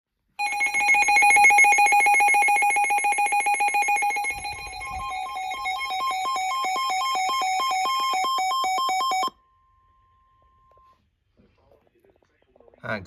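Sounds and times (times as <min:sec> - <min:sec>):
pulsing electronic alarm tone: 0:00.4 - 0:09.4.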